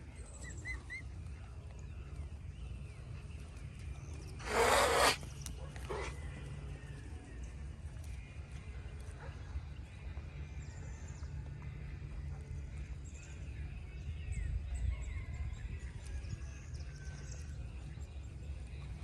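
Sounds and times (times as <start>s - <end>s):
small birds chirping: 0.2s - 6.1s.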